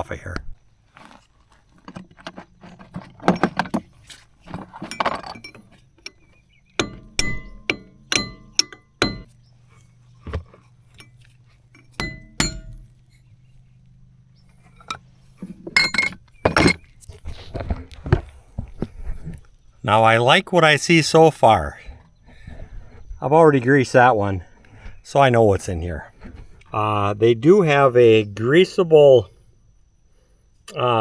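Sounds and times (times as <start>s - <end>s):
scraping and handling noise: 0.0s - 7.6s, 9.2s - 19.5s
sharp metallic clinks and taps: 4.8s - 9.5s, 10.9s - 13.3s, 14.6s - 15.0s, 15.6s - 16.8s.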